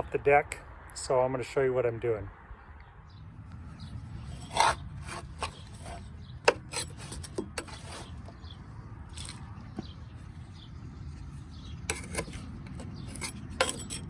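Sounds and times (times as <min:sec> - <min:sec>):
scraping and knocking: 0:04.2 - 0:08.5, 0:11.9 - 0:14.0.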